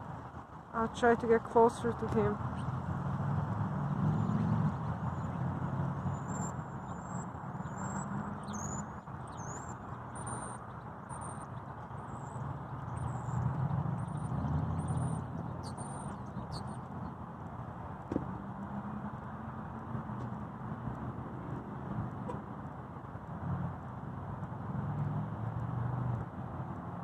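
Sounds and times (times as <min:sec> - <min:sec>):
songbird singing whistled notes: 0:06.0 - 0:16.9.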